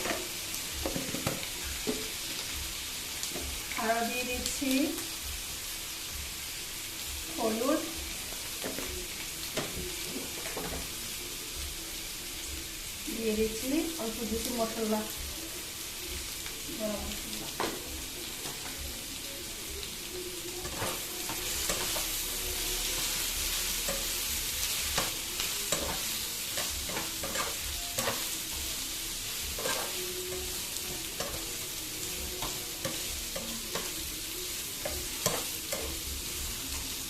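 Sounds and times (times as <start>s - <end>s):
spoon knocking and scraping pan: 0.0s - 2.1s, 20.6s - 22.1s, 24.9s - 28.6s, 29.5s - 31.6s, 34.8s - 36.0s
potatoes sizzling in oil: 0.0s - 37.0s.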